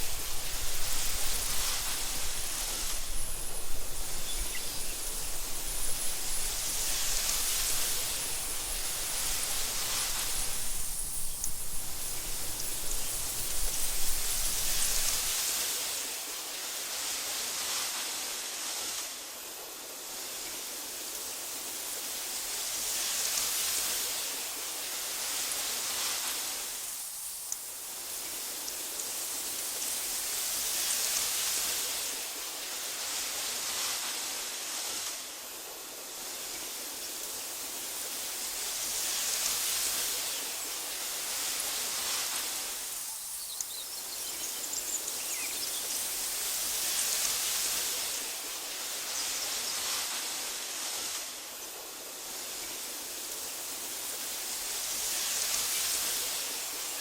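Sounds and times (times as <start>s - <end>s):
wind through grass: 0.0s - 57.0s
faint high chirps: 43.0s - 46.3s.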